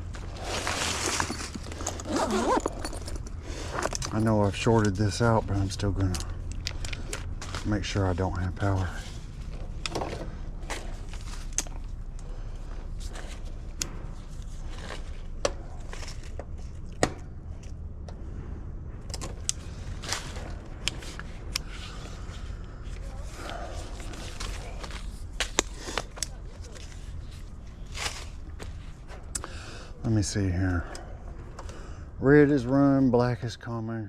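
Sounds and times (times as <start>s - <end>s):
steady low rumble: 0.0s - 34.0s
hand tools clicking and scraping: 0.1s - 8.0s.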